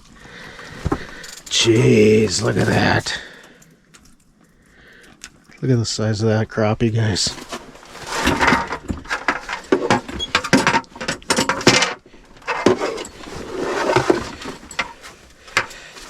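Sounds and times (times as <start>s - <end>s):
scuffling noise: 0.4s - 3.3s.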